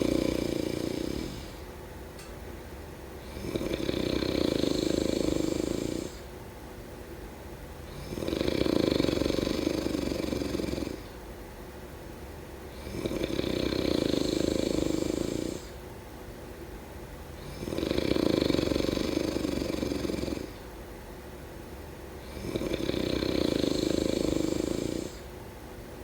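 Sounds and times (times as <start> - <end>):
loud snoring: 0.0 - 1.7, 3.2 - 6.3, 7.8 - 11.2, 12.7 - 15.8, 17.4 - 20.6, 22.2 - 25.3
quiet breathing: 0.0 - 1.7, 22.2 - 25.4.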